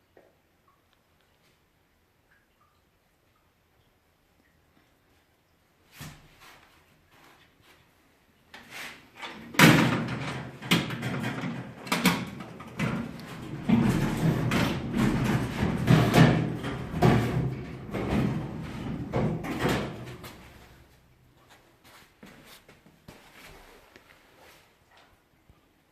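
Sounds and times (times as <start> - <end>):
hard objects knocking and scraping: 9.8 - 20.7.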